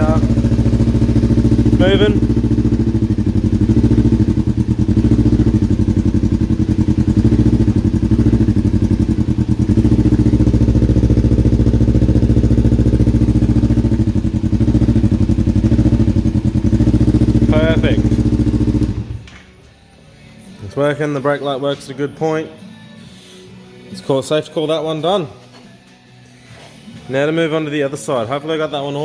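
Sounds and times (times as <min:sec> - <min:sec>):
motorcycle engine running: 0:00.0 - 0:19.3.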